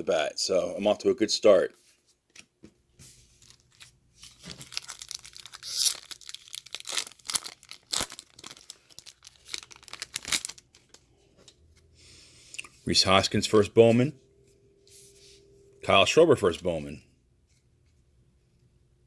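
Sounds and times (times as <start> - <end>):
foil wrapper tearing and crinkling: 3.4 - 11.0.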